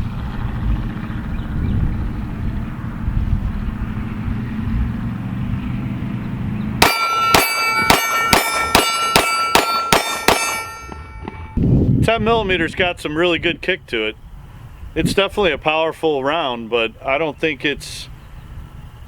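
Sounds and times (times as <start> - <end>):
pistol shots: 6.8 - 10.9
bullets clanging on steel target: 6.8 - 11.6.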